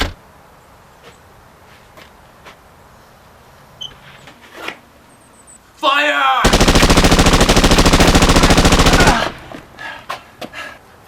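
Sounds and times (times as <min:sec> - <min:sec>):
person shouting: 0:05.8 - 0:06.5
machine-gun fire: 0:06.4 - 0:09.5.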